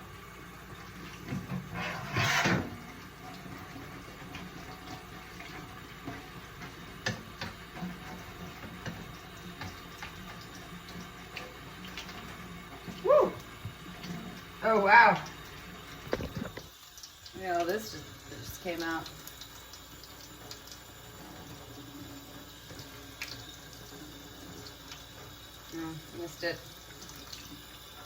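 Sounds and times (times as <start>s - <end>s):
tap running into sink: 0.7s - 16.8s.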